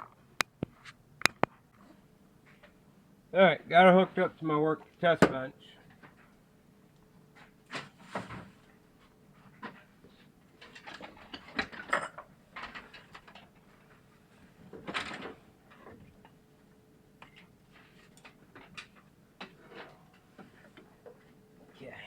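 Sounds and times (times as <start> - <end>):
clicks and taps handling wires: 0.0 - 1.6.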